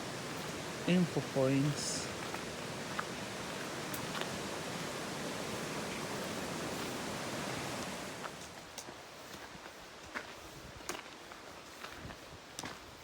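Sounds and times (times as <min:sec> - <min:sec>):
river rushing: 0:00.0 - 0:08.7.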